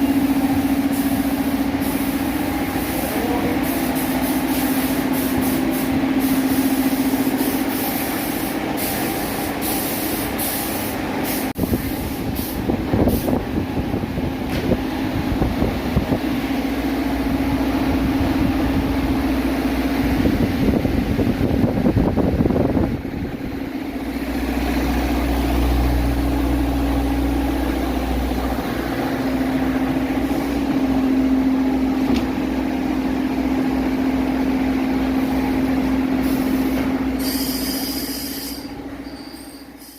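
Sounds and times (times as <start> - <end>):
machine motor humming: 23.3 - 34.6.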